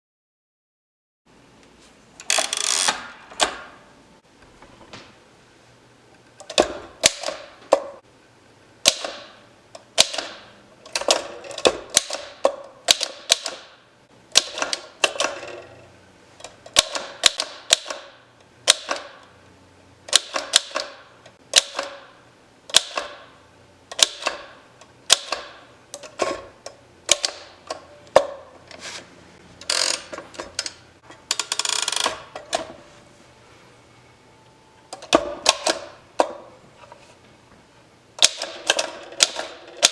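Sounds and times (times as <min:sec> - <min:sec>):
manual typewriter typing: 0:10.0 - 0:13.7, 0:16.7 - 0:19.2, 0:20.1 - 0:22.0, 0:38.2 - 0:39.9.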